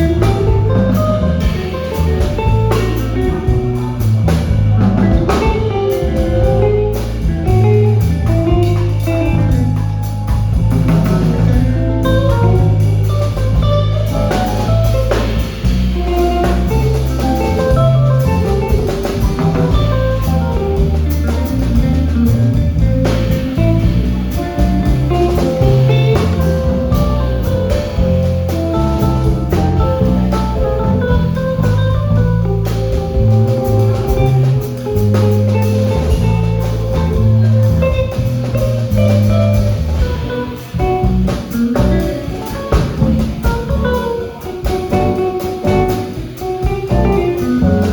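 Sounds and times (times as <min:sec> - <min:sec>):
drum kit: 0:00.0 - 0:47.9
electric guitar lines: 0:00.0 - 0:47.9
walking bass: 0:00.0 - 0:47.9.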